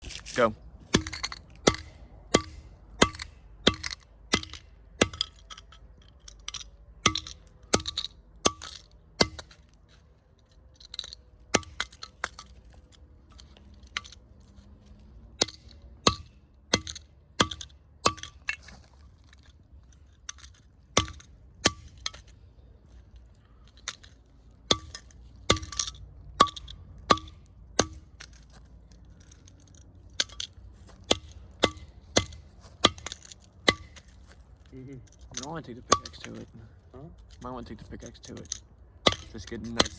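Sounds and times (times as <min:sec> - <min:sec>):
tool striking metal lock: 0:00.9 - 0:09.7, 0:15.4 - 0:18.6, 0:23.7 - 0:28.5, 0:35.1 - 0:36.5.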